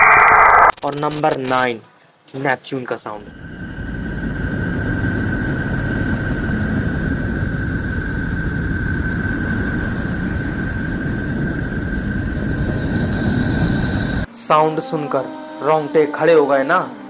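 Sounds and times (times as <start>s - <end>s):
low rumbling drone: 3.1s - 14.7s.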